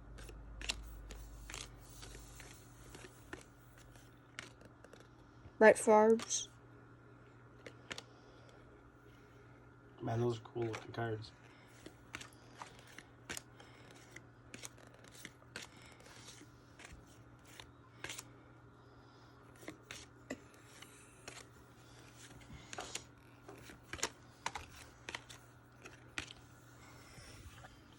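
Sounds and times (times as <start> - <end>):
faint low hum: 0.0 - 27.9
cards flipped by hand: 0.1 - 5.1, 7.6 - 8.1, 10.6 - 18.3, 19.5 - 27.6.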